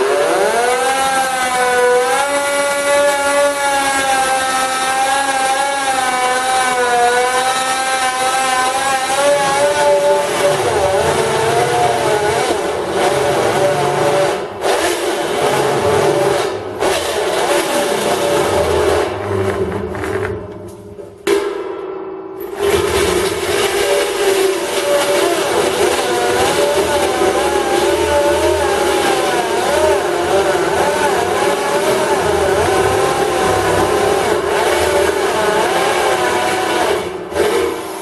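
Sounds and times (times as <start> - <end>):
drill bit cutting steel rumble: 22.4 - 38.0.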